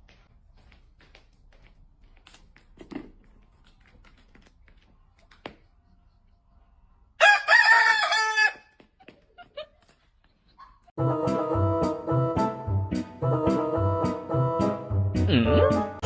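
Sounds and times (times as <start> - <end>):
rooster crowing: 7.2 - 8.7.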